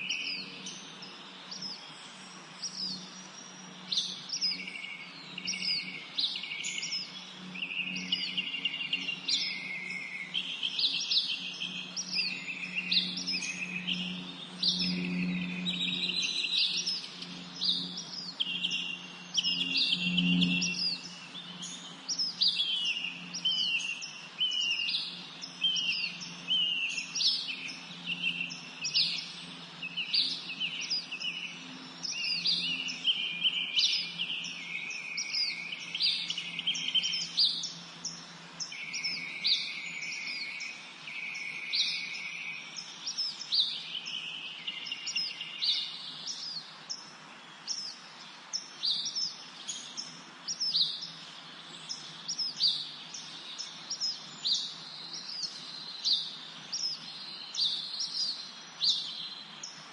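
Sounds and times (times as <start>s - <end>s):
songbirds chirping and singing: 0.0s - 59.9s.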